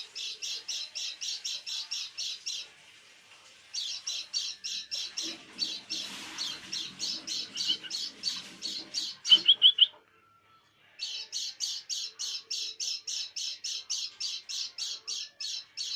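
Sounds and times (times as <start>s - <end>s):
bird harsh call notes: 3.8s - 10.0s.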